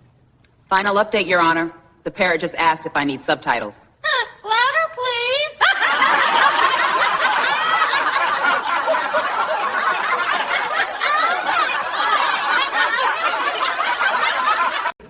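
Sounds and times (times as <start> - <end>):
group of people laughing: 5.5 - 15.0.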